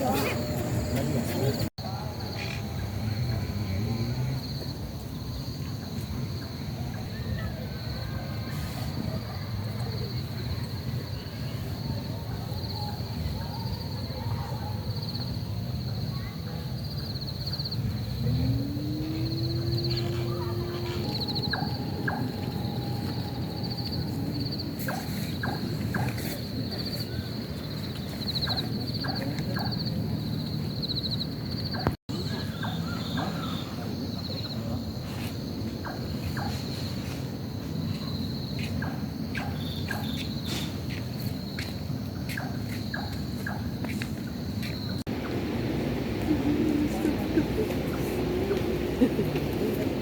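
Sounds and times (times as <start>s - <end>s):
high pulsing animal trill: 18.1s - 24.6s
steady low rumble: 45.0s - 50.0s.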